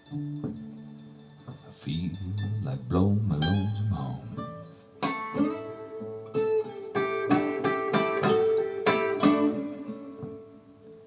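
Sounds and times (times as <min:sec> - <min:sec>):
plucked blues guitar: 0:00.1 - 0:00.8, 0:01.4 - 0:11.0
person singing: 0:01.7 - 0:04.7.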